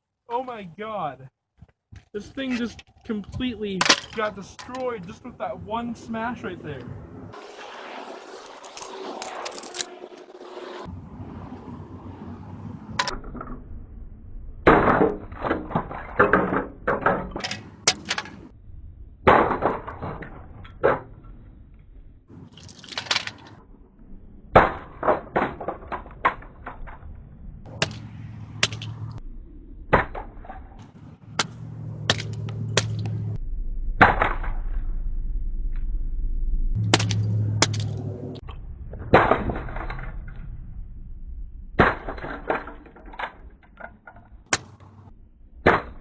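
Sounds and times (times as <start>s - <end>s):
breaking pieces crunching and clinking: 36.9s - 37.9s.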